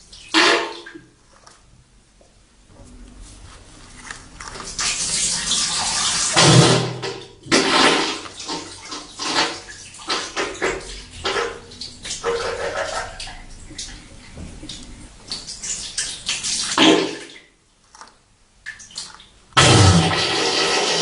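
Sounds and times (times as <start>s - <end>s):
wet spluttering diarrhea sound: 4.1s - 17.3s, 19.6s - 21.0s.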